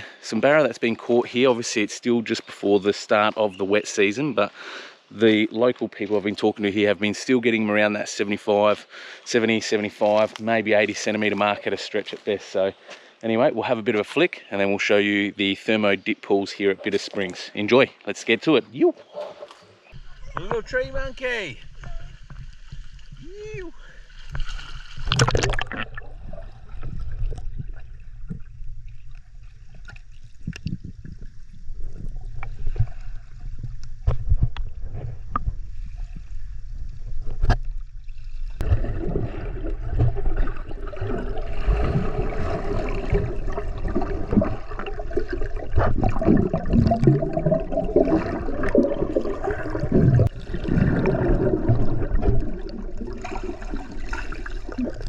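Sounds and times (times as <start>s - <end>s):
gurgling splashing water: 21.6s - 35.6s, 37.1s - 55.0s.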